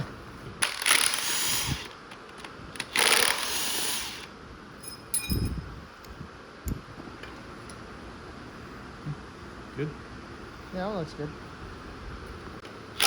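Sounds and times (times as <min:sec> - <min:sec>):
metallic clink with ring: 0:04.8 - 0:05.6.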